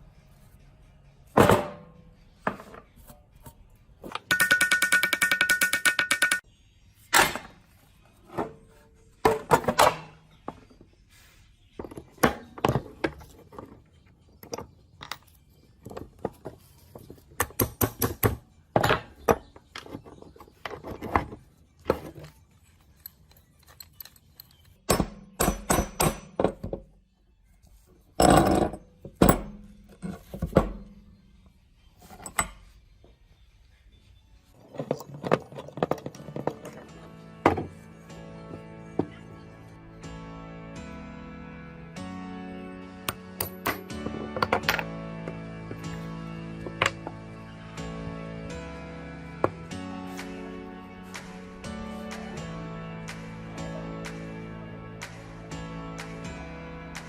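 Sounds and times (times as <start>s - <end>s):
metal parts clanking: 18.8s - 26.8s, 34.6s - 37.8s.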